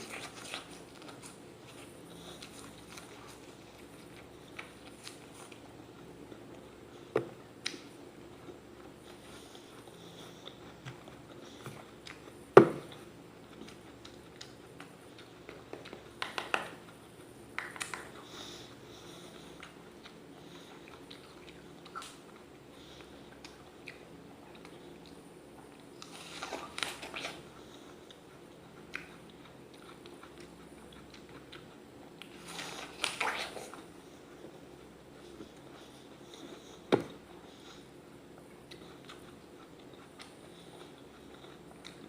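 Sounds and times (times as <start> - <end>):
apple being bitten and chewed: 0.0 - 6.8, 23.1 - 37.9.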